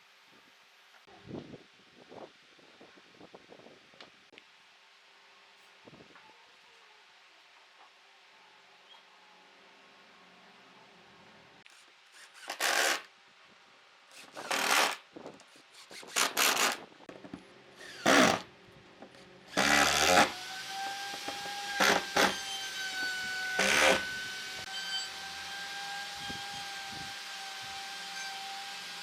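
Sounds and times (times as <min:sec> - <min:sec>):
rasping saw strokes: 0:11.7 - 0:13.1, 0:14.1 - 0:16.8, 0:17.8 - 0:18.4, 0:19.5 - 0:29.0
power tool motor whine: 0:14.1 - 0:15.0, 0:17.8 - 0:18.4, 0:19.5 - 0:29.0.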